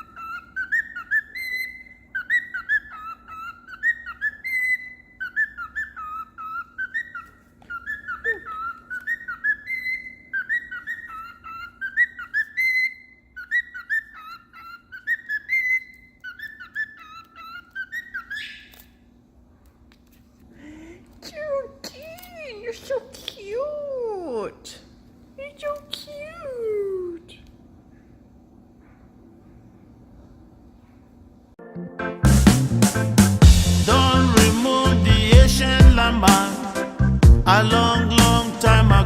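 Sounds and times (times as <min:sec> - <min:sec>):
cockatiel whistling a tune: 0:00.0 - 0:18.8
faint steady hum: 0:00.0 - 0:31.6.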